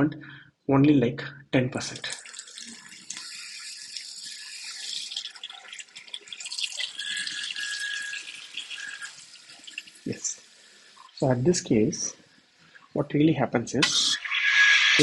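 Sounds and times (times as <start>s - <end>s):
water running from a tap: 1.8s - 13.0s
faint whistling tone: 7.0s - 9.1s.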